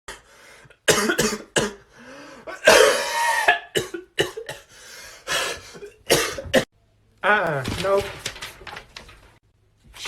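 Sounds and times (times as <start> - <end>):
person coughing: 0.9 - 1.8, 2.5 - 4.7, 5.3 - 6.7.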